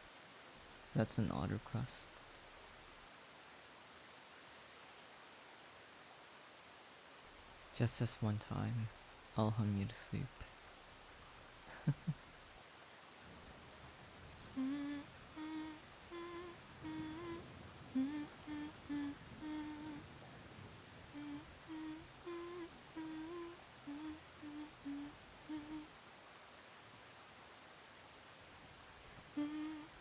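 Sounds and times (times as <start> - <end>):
person humming a lullaby: 14.4 - 20.1, 21.1 - 26.0, 29.2 - 30.0.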